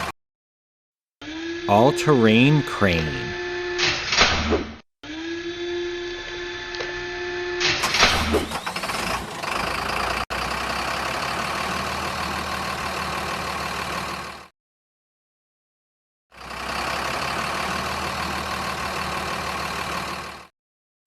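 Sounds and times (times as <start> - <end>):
truck engine running: 8.5 - 14.5, 16.4 - 20.5.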